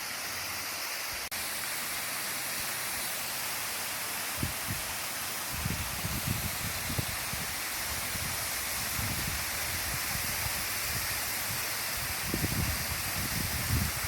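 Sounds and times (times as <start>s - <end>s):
waterfall rushing: 0.0s - 14.0s
wind rumble on microphone: 5.5s - 14.0s.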